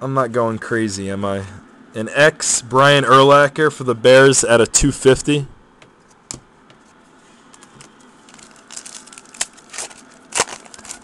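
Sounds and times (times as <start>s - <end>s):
cards rustling and clicking: 7.5s - 11.0s.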